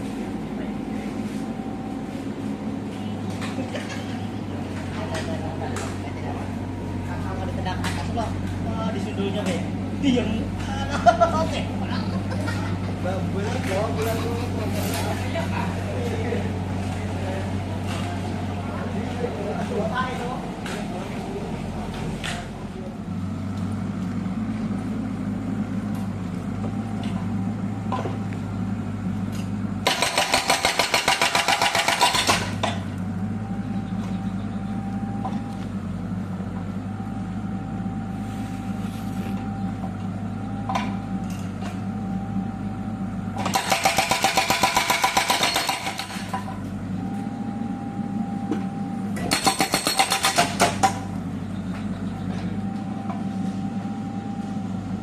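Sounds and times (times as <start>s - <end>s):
diesel engine running: 0.0s - 55.0s
hydraulic breaker hammering: 29.8s - 32.9s, 43.4s - 46.6s, 48.6s - 51.3s.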